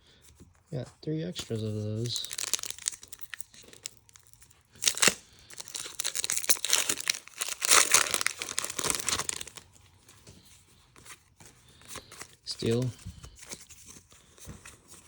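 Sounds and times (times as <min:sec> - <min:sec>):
foil wrapper crinkling: 0:01.4 - 0:09.8, 0:11.6 - 0:14.3.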